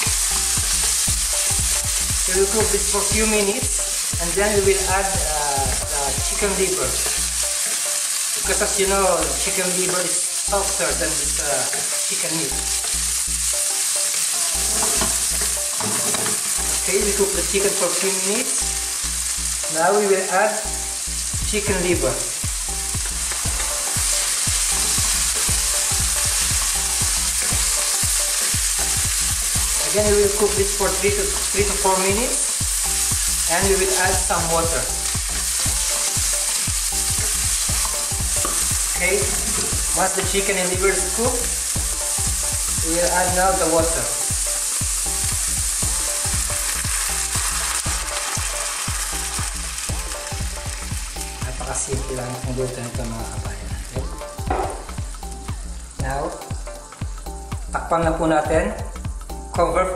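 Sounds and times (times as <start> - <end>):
chicken sizzling in hot oil: 0.0 - 58.0
stirring in a pan: 11.2 - 17.3, 22.9 - 52.5.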